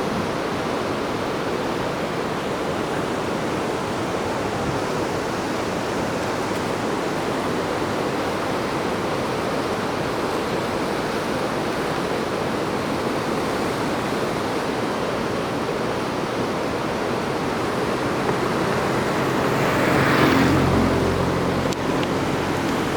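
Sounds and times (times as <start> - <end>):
waterfall rushing: 13.8 - 22.9.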